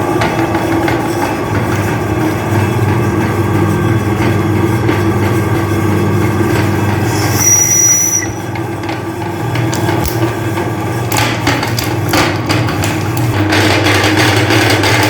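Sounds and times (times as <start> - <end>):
meat grinder motor humming: 0.0 - 15.0
hard candy cracking: 9.6 - 14.5.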